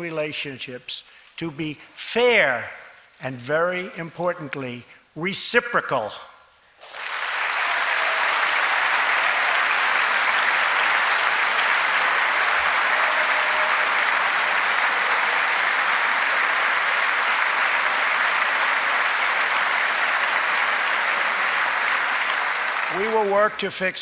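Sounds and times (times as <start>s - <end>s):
audience applauding: 6.8s - 23.6s.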